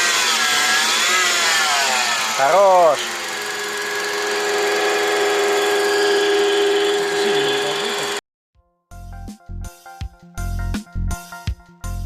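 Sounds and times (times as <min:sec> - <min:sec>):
humming drone of pulley: 0:00.0 - 0:08.2
music: 0:07.4 - 0:12.0.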